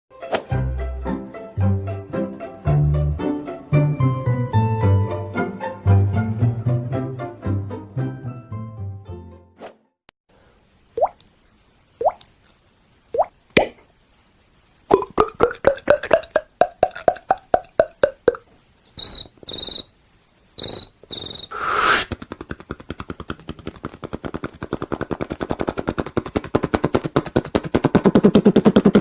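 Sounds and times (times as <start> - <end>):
mouth popping pulses: 11.0 - 11.2, 12.0 - 12.3, 13.1 - 13.9, 14.9 - 19.9, 20.6 - 29.0
man making mouth sound effects: 14.9 - 18.5, 20.6 - 29.0
fast rattling pulse: 20.6 - 29.0
brief mouth hiss: 21.5 - 22.2.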